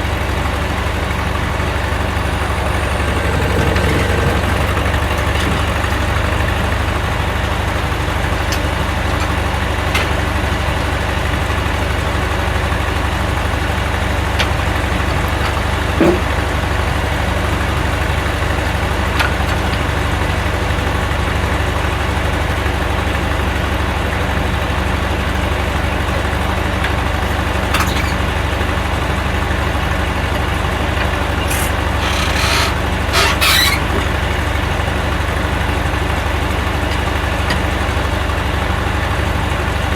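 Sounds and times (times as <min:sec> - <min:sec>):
engine idling: 0:00.0 - 0:39.9
light knocks and clatter: 0:15.4 - 0:16.4.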